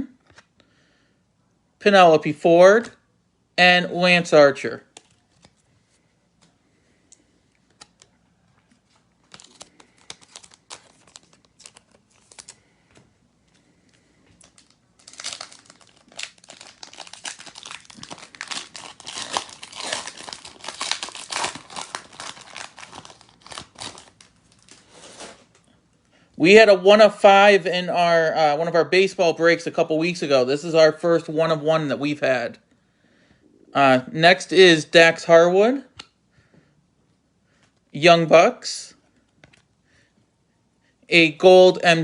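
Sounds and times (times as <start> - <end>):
plastic wrapper crinkling and tearing: 7.5 - 12.7, 13.5 - 25.7.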